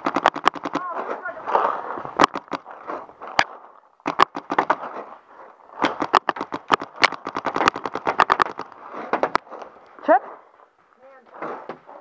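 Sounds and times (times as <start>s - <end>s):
paintball markers firing: 0.0s - 2.7s, 3.4s - 5.0s, 5.8s - 9.5s.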